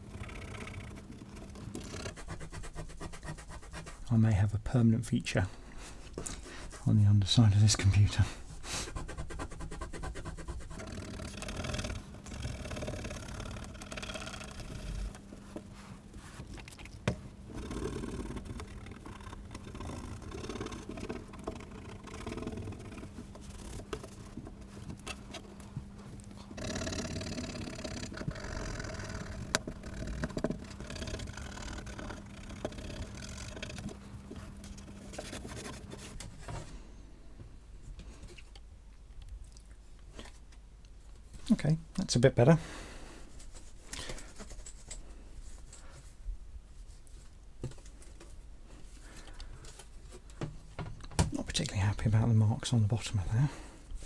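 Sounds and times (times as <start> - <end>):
scratchy rubbing on plastic: 0.0 - 4.1, 6.2 - 36.5, 43.4 - 46.0.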